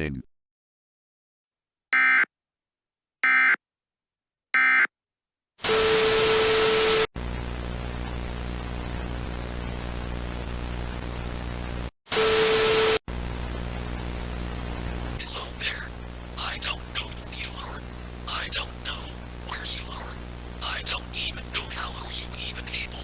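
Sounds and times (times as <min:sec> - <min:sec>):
buzzing hum: 0:02.0 - 0:02.3, 0:03.2 - 0:03.6, 0:04.6 - 0:04.9
digital data tones: 0:04.6 - 0:04.9
loud static with steady tone: 0:06.7 - 0:23.0.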